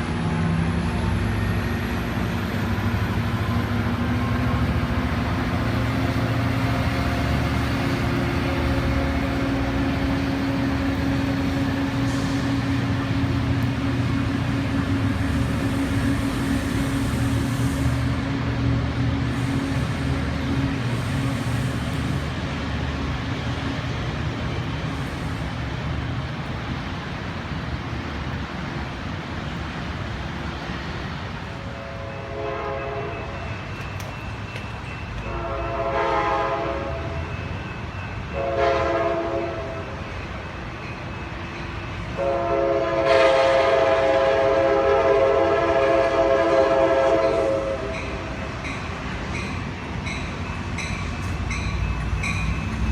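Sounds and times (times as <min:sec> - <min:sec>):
train rumbling: 0:00.0 - 0:52.9
train horn blasts: 0:31.6 - 0:33.4, 0:35.2 - 0:37.3, 0:38.3 - 0:40.0, 0:42.1 - 0:48.3.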